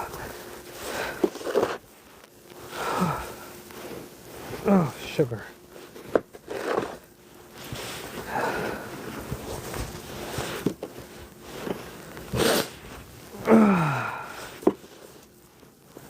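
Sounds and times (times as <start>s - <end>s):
snow shovel scraping: 0.0s - 2.0s, 2.6s - 15.3s
short falling groan: 13.4s - 14.4s.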